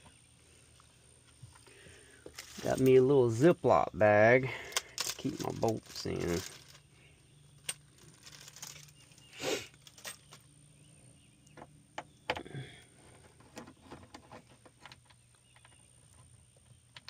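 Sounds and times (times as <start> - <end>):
plastic bag rustle: 2.3 - 3.0, 4.9 - 7.0, 7.6 - 10.4.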